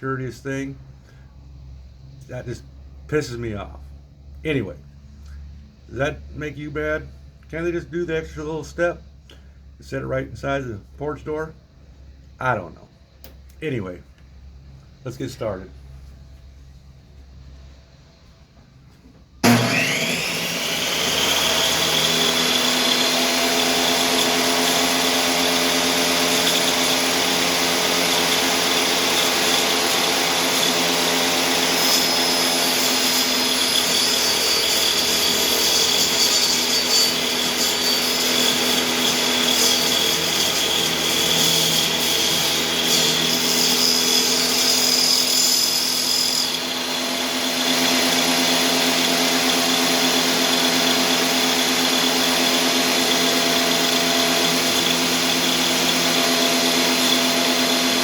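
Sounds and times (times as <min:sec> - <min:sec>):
saw blade cutting wood: 0:19.4 - 0:58.0
table saw motor whine: 0:19.4 - 0:58.0.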